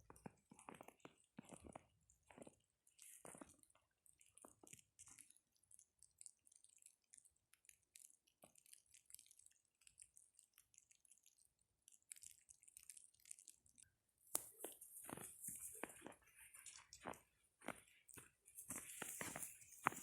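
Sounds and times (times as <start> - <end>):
footsteps crunching on snow: 14.4 - 20.0.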